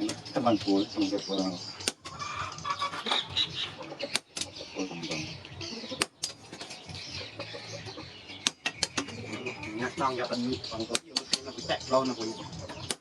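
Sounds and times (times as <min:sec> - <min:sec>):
birds calling: 0:00.0 - 0:13.0.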